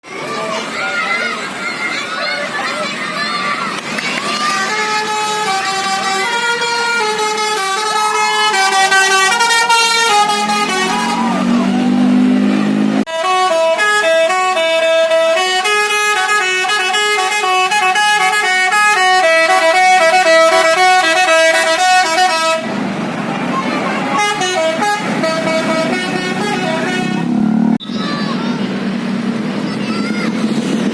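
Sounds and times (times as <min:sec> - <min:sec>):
musical bus horn tune: 0:04.4 - 0:22.8, 0:24.0 - 0:27.8.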